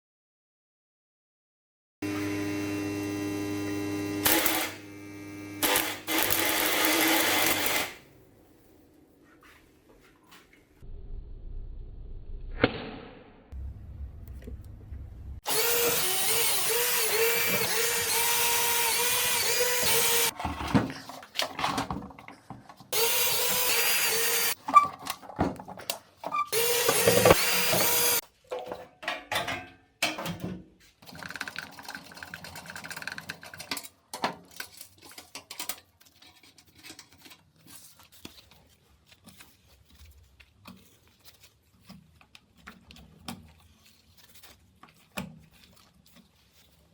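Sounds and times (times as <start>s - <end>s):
power tool running: 2.0s - 8.0s, 15.4s - 20.3s, 23.0s - 24.6s, 26.5s - 28.2s
clicks and knocks of handling: 24.9s - 26.3s, 32.8s - 46.8s.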